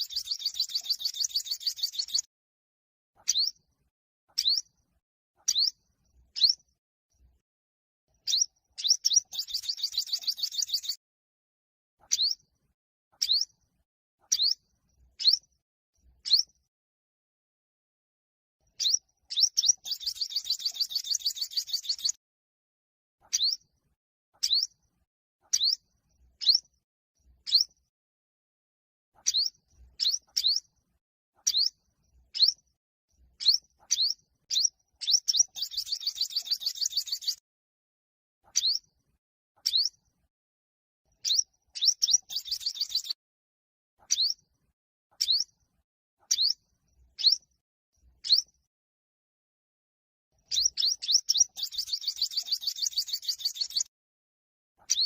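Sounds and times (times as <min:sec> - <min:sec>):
bird rapid-fire trill: 0:00.0 - 0:02.3, 0:08.2 - 0:11.0, 0:18.8 - 0:22.2, 0:33.4 - 0:37.4, 0:41.2 - 0:43.2, 0:50.5 - 0:53.9.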